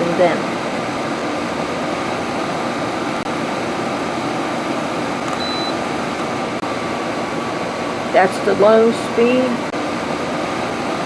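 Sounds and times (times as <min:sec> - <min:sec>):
dehumidifier fan rushing: 0:00.0 - 0:11.0
short high beep: 0:05.4 - 0:05.8.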